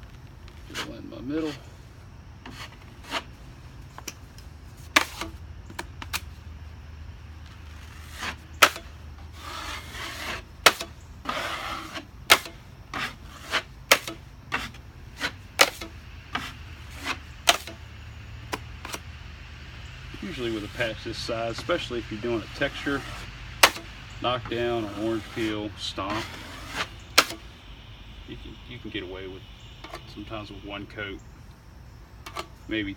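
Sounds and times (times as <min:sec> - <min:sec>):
drywall knife scraping compound: 0:00.5 - 0:01.7, 0:02.4 - 0:03.4, 0:04.9 - 0:05.4, 0:07.5 - 0:17.8, 0:20.2 - 0:27.5.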